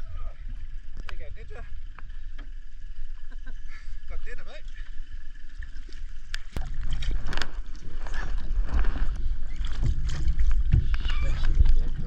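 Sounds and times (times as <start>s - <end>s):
water sloshing around boat: 0.0s - 12.0s
wind rumble on microphone: 5.4s - 12.0s.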